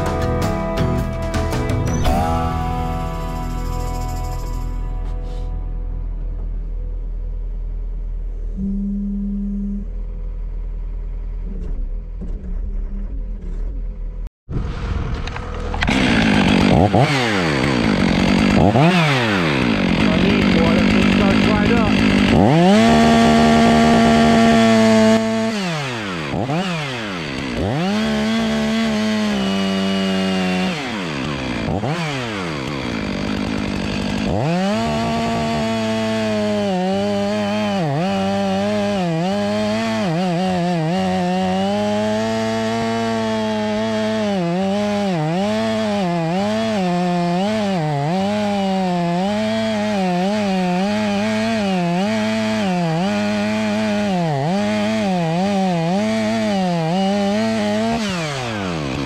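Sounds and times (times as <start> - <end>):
chainsaw cutting wood: 14.5 - 59.0
chainsaw revving: 14.6 - 59.0.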